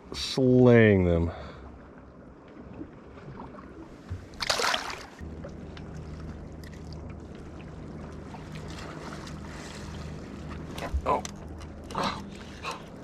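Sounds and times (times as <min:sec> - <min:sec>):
water splash: 0:03.2 - 0:05.3.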